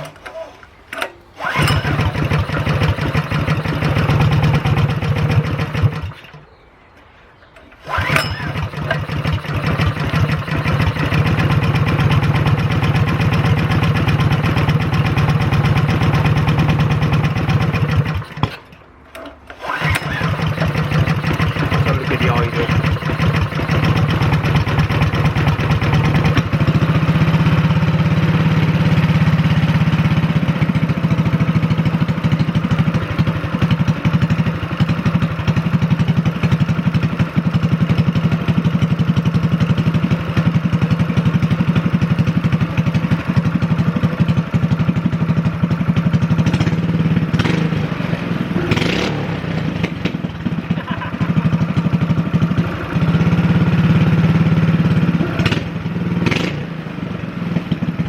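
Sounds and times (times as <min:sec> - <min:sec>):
small engine fast idle: 0:00.0 - 0:06.7, 0:07.5 - 0:58.0
short clatters: 0:00.0 - 0:12.2.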